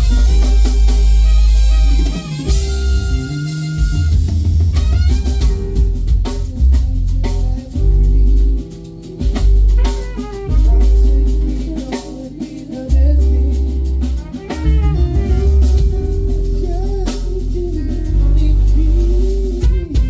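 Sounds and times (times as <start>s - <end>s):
bass and guitar: 0.0s - 11.8s, 12.9s - 20.0s
drum kit beat: 0.0s - 20.0s
person singing: 6.4s - 9.4s, 10.5s - 20.0s.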